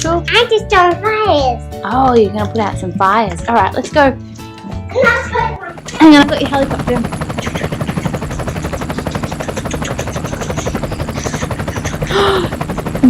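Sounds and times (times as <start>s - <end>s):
toy helicopter rotor chopping: 5.6s - 13.0s.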